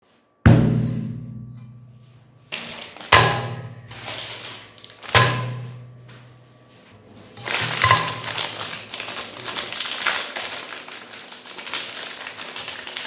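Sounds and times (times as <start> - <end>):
heavy booming hits with ringing tone: 0.5 - 2.5, 3.3 - 4.0.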